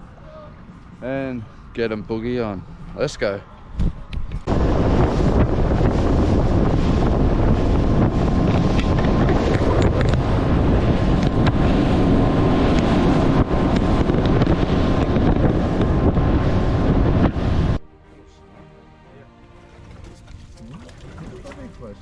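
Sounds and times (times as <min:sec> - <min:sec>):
wind buffeting microphone: 0:00.0 - 0:17.8
small boat engine at speed: 0:04.5 - 0:17.8
water rushing past hull: 0:19.4 - 0:22.0.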